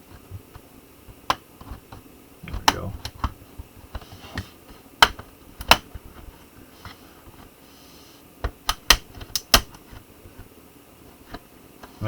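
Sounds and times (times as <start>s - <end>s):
plastic clips snapping: 5.0s - 5.9s, 8.6s - 9.8s.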